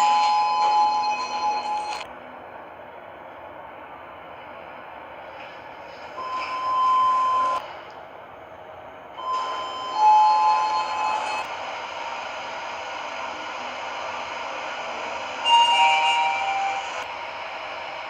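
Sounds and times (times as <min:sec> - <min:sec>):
elevator electronic chime: 0:00.0 - 0:02.0, 0:06.2 - 0:07.6, 0:09.2 - 0:11.5, 0:15.4 - 0:17.0.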